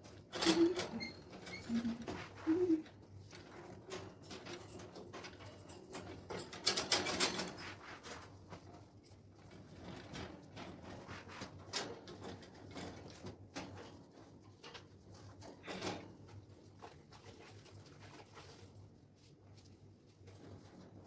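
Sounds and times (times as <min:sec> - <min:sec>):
birdcage knocking and scraping: 0:03.4 - 0:08.6.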